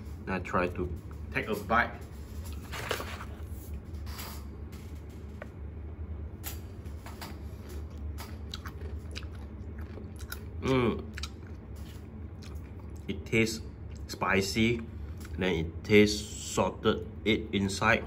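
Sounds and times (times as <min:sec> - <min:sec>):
biscuit crunching: 0:07.6 - 0:13.1.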